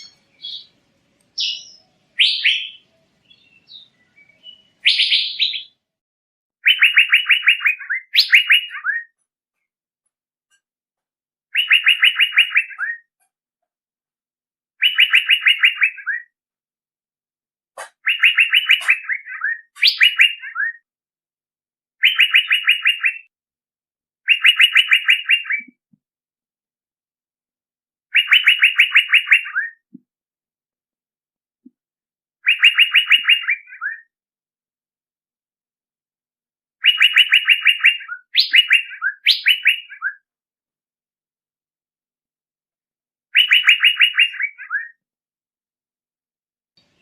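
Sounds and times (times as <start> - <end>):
bird calling rapid notes: 11.5 - 13.1, 14.8 - 16.3, 17.8 - 20.8, 22.0 - 23.3, 28.1 - 29.8, 36.8 - 40.2, 43.4 - 45.0.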